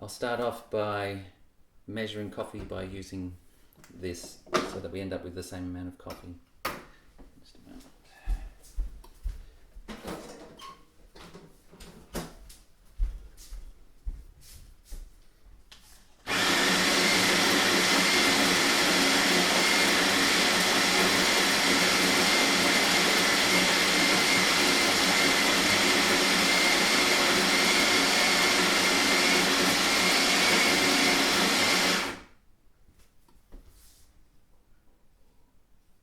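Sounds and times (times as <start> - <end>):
coffee grinder grinding beans: 16.2 - 32.3.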